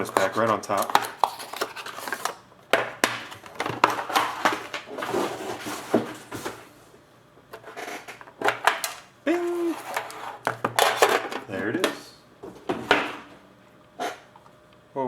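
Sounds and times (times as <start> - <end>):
box packaging rustling and tapping: 0.0 - 6.7, 9.8 - 13.4.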